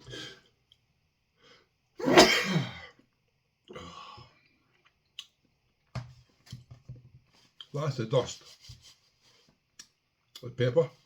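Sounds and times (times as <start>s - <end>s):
man coughing or sneezing: 2.0s - 2.9s.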